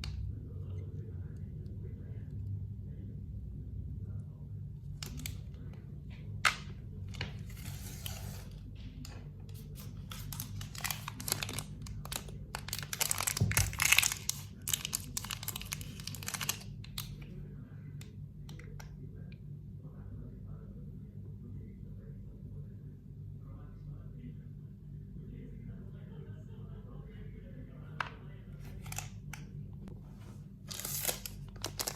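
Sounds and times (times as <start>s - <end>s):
low hum: 0.0s - 31.9s
packaging tearing and crinkling: 9.8s - 17.1s, 30.7s - 31.9s.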